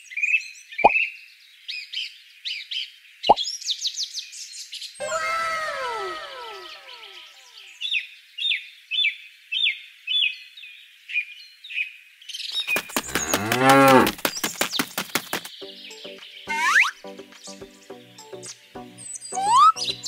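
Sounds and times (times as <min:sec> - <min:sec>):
cow mooing: 0:13.1 - 0:14.1.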